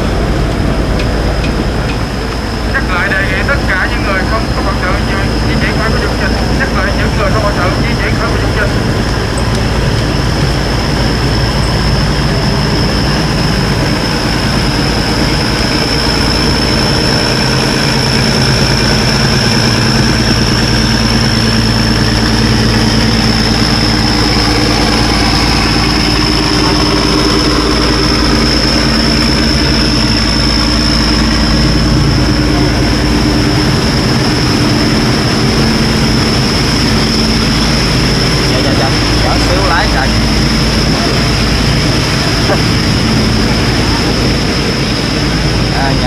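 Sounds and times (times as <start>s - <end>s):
boat engines humming: 0.0s - 46.0s.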